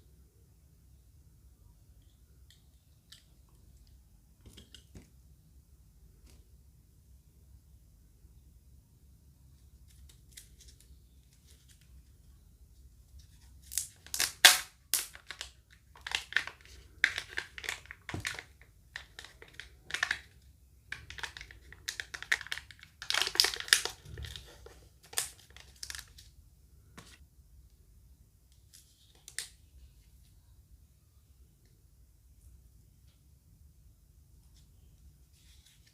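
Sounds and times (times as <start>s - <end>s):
packaging being torn and crinkled: 13.6s - 20.3s, 21.0s - 26.3s.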